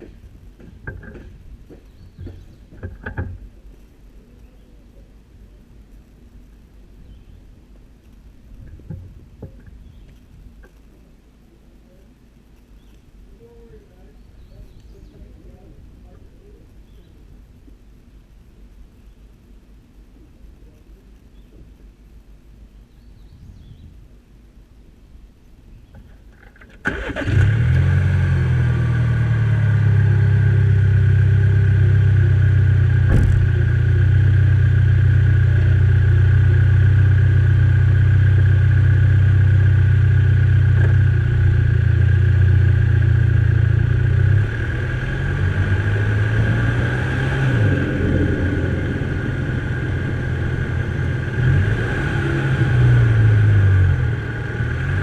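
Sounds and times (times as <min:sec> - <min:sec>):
car engine starting and idling: 0:26.6 - 0:55.0
car engine revving: 0:26.9 - 0:36.4, 0:42.7 - 0:55.0.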